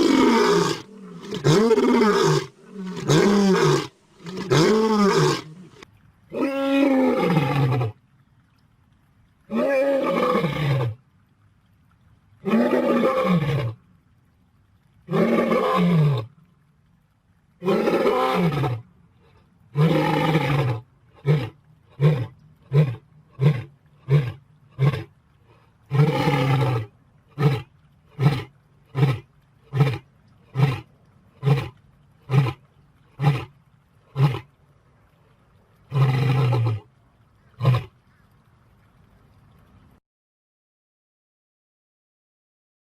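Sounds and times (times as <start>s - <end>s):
lion grunting roars: 0.0s - 5.8s
lion roaring: 0.0s - 5.8s, 19.8s - 25.1s, 25.9s - 32.6s, 35.9s - 36.8s.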